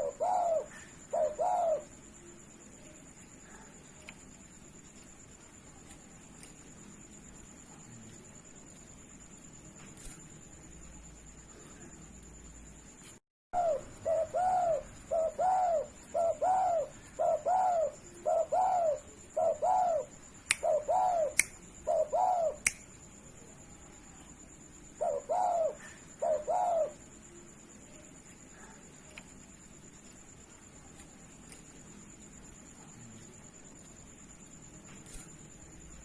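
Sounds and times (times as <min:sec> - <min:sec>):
dove cooing: 0:00.0 - 0:02.0, 0:13.6 - 0:22.6, 0:25.0 - 0:27.0
faint steady high whine: 0:00.0 - 0:36.0
sharp clicks: 0:21.4 - 0:21.6, 0:22.6 - 0:22.9.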